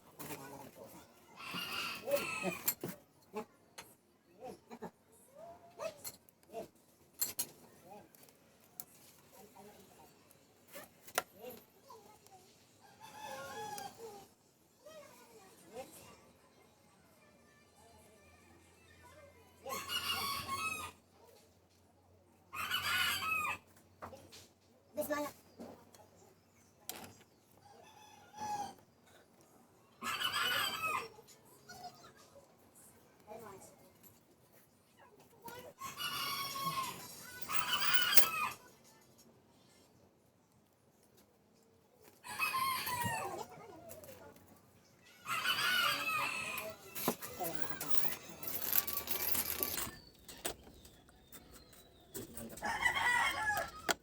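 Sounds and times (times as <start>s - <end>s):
rooster crowing: 45.2s - 47.0s, 52.6s - 54.0s.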